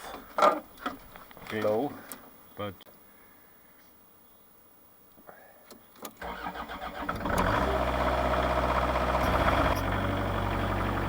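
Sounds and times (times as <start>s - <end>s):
diesel engine cranking and running: 6.2s - 11.0s.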